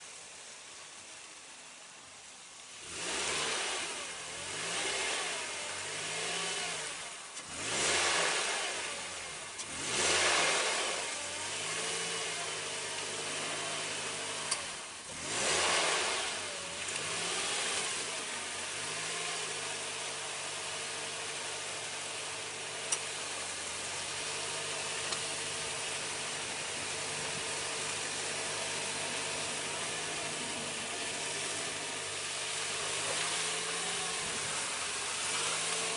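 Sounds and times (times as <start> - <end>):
off-road vehicle engine revving: 2.5 - 35.9
wheels spinning: 22.8 - 35.9.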